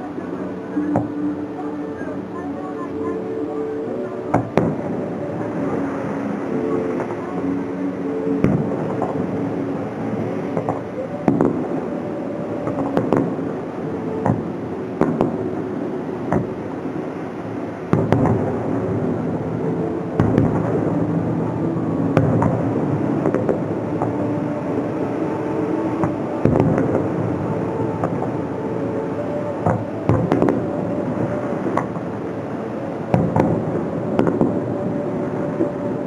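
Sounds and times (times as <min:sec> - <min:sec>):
fireworks crackling rumble: 0:00.0 - 0:36.0
fireworks bangs: 0:17.9 - 0:18.8, 0:26.0 - 0:27.3, 0:29.6 - 0:30.7, 0:33.1 - 0:34.6.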